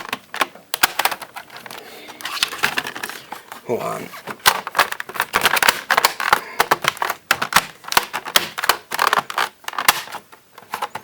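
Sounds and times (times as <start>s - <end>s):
plastic clicks and taps: 0.0s - 1.8s, 4.3s - 11.0s.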